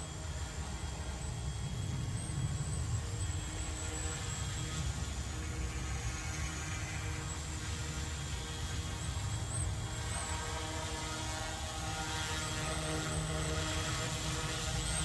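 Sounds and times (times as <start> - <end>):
faint high whine: 0.0 - 15.0
remote-control helicopter rotor hum: 0.0 - 15.0.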